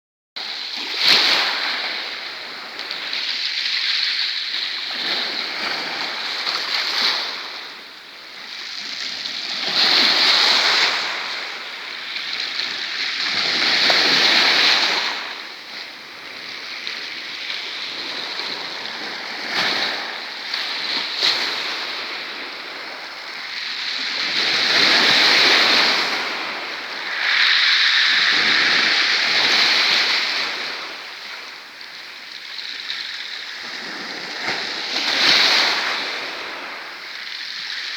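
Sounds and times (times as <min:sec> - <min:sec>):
surf breaking on shore: 0:08.5 - 0:31.8.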